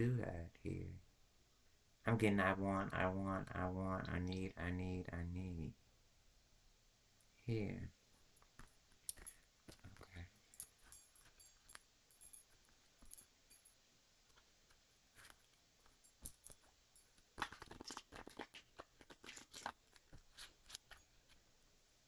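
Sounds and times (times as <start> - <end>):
cards flicking and rustling: 17.2 - 21.0.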